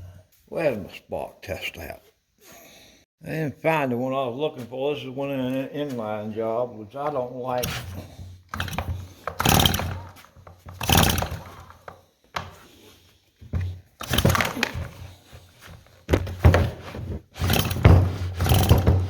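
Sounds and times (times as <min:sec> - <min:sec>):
engine cranking: 0:07.5 - 0:11.9, 0:14.0 - 0:15.0, 0:17.4 - 0:19.0
starter rope pulled: 0:07.5 - 0:12.8, 0:13.4 - 0:19.0.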